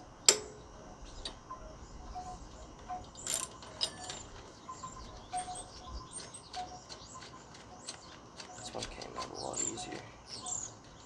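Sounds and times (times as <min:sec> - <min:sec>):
metal clinks: 0:03.2 - 0:05.6.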